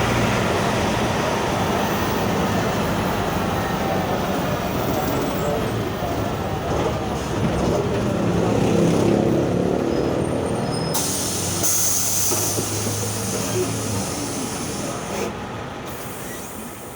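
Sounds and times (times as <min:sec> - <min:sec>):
diesel engine pulling: 0:00.0 - 0:16.9.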